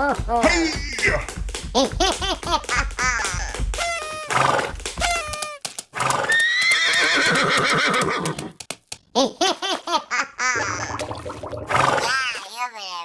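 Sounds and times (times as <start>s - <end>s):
horse neighing: 6.0s - 8.5s.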